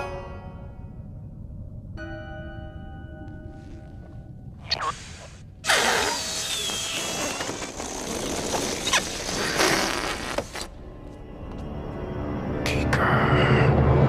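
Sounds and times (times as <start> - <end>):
loud cartoon fart blast: 5.6 - 7.4, 8.2 - 10.6.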